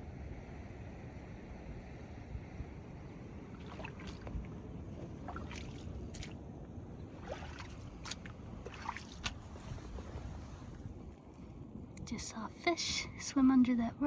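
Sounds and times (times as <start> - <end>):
low steady rumble: 0.0 - 14.0
seawater sloshing among rocks: 3.4 - 11.0
sharp watery plinks: 5.2 - 6.4, 7.2 - 9.5.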